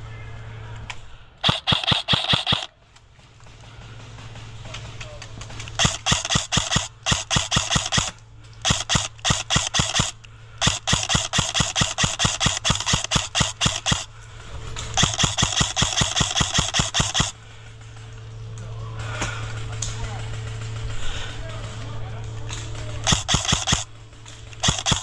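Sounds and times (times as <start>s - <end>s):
airsoft gun rapid shots: 1.4s - 2.7s, 5.6s - 14.1s, 15.0s - 17.4s, 22.7s - 23.9s, 24.5s - 25.0s.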